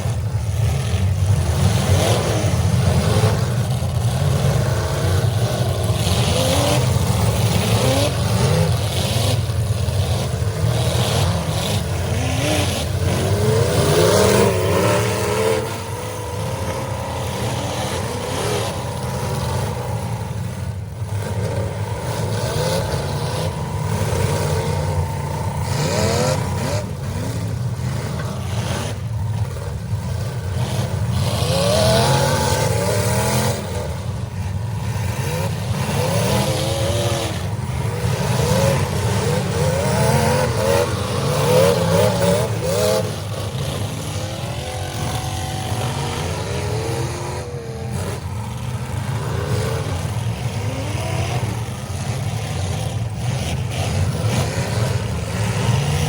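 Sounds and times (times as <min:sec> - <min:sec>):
car engines revving hard: 0:00.0 - 0:56.0.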